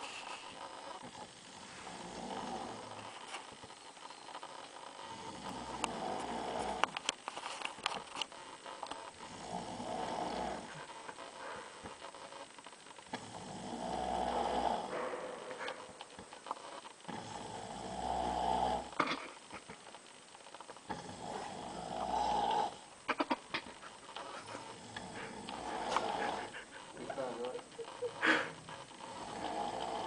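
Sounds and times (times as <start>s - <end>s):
person snoring loudly: 1.0s - 3.1s, 5.0s - 7.0s, 9.2s - 10.9s, 13.1s - 15.6s, 17.1s - 19.2s, 20.9s - 22.9s, 24.7s - 27.5s, 28.1s - 30.0s.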